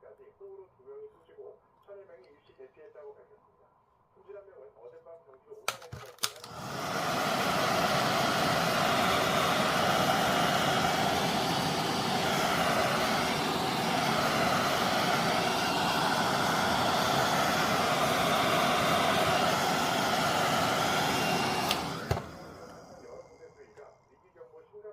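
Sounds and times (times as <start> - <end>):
hot-air blower whooshing: 6.2 - 24.0.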